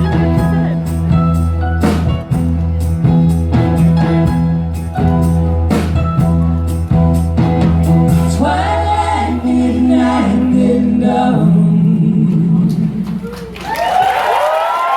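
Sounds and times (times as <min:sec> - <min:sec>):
low bass note: 0:00.0 - 0:13.3
voices singing harmony: 0:08.1 - 0:13.2.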